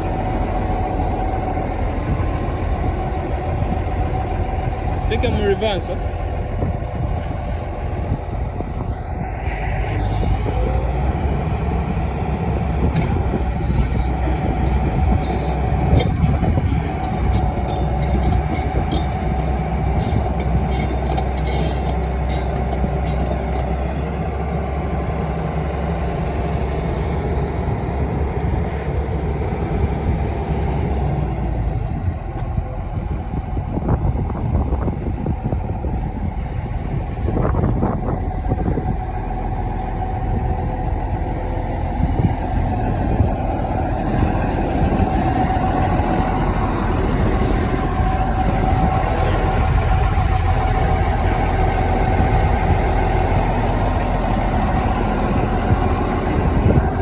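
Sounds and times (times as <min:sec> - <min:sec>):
excavator diesel engine running: 0:00.0 - 0:57.0
sharp clicks and squeaks: 0:12.8 - 0:24.1, 0:53.4 - 0:55.5.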